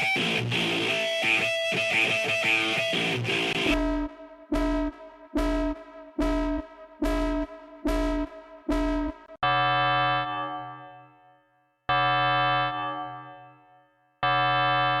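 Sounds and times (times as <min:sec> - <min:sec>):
synthesizer keyboard chords: 0:03.0 - 0:09.8.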